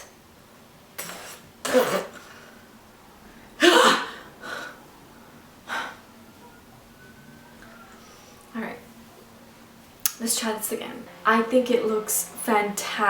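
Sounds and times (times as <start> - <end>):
woman gasping: 3.3 - 4.8, 5.6 - 6.1.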